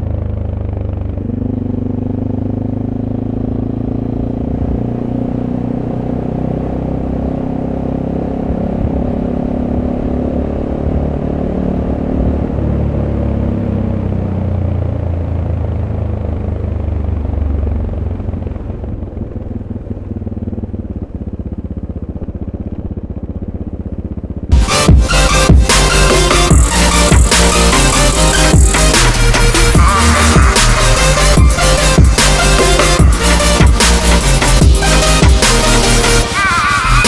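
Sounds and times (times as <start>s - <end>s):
motorcycle engine running: 0.0s - 36.7s
electronic music: 24.5s - 37.0s.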